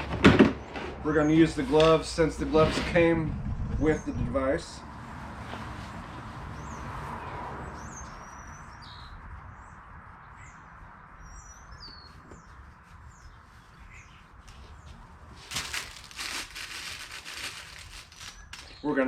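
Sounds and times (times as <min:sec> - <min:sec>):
steady low hum: 0:01.3 - 0:05.2
small birds chirping: 0:06.5 - 0:16.3, 0:16.9 - 0:19.0
loud crinkle: 0:15.3 - 0:18.9.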